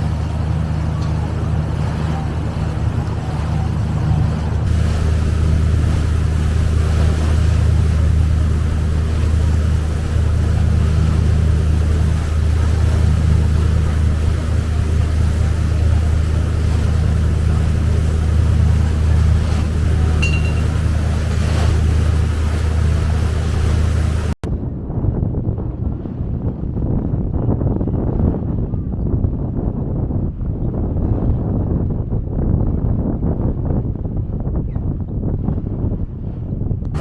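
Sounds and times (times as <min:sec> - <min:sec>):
boat engine droning: 0:00.0 - 0:24.4.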